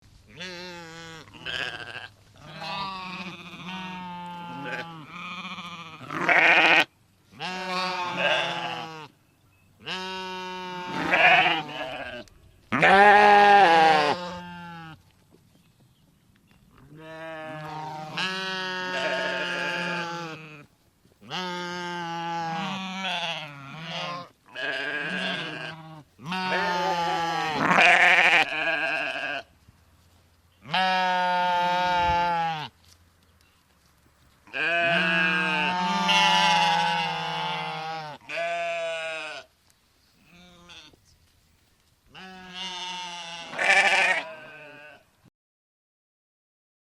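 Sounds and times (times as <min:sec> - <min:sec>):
sheep bleating: 0:00.3 - 0:09.1, 0:09.8 - 0:15.0, 0:16.9 - 0:29.5, 0:30.6 - 0:32.8, 0:34.5 - 0:39.5, 0:40.3 - 0:41.0, 0:42.1 - 0:45.1.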